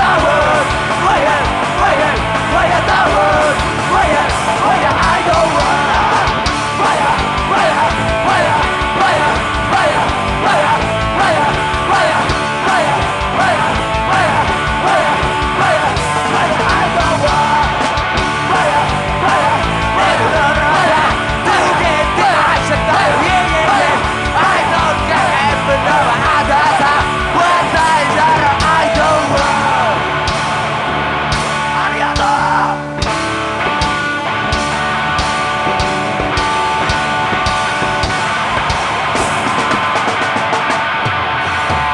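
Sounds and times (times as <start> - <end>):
shouted vocals: 0.0 - 30.0
distorted guitars: 0.0 - 41.9
drums: 0.0 - 41.9.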